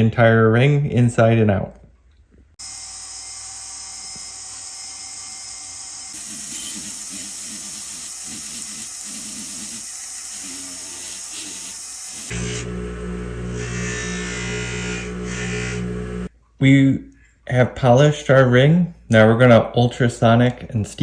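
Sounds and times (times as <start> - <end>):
polishing motor whirring: 3.2 - 16.3.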